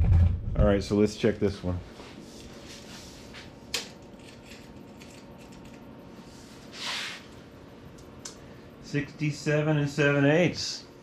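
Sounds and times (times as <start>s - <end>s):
steady low hum: 0.0s - 11.0s
tape measure rasping hiss: 6.5s - 7.4s.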